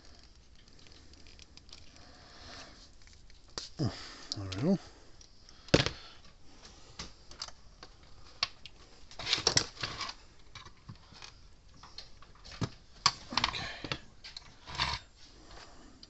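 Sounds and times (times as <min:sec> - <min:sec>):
small parts clattering: 0:07.0 - 0:15.1.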